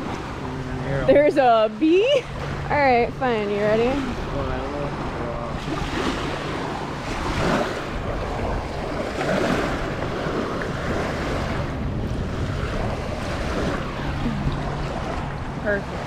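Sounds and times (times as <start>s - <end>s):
waves washing onto sand: 0.0s - 16.0s
wind buffeting microphone: 0.0s - 16.0s.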